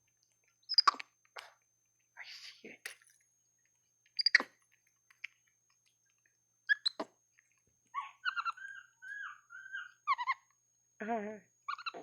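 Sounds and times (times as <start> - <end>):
monkey crunching insects: 0.0 - 8.0
monkey high chirping calls: 0.7 - 1.0, 4.2 - 4.6, 6.7 - 7.1, 8.0 - 10.5, 11.7 - 12.0.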